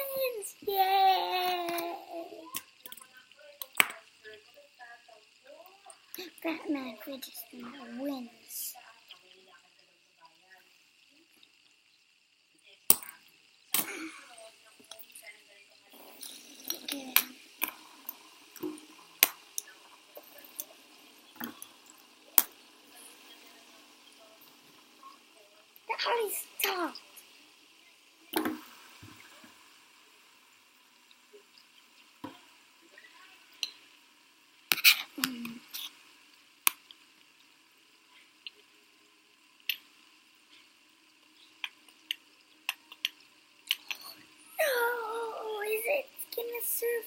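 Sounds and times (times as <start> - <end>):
fidget spinner clicks and taps: 0.0 - 4.3, 12.9 - 13.9, 16.2 - 22.7, 36.6 - 37.0, 41.6 - 44.1
fidget spinners clicking and tapping: 0.0 - 47.0.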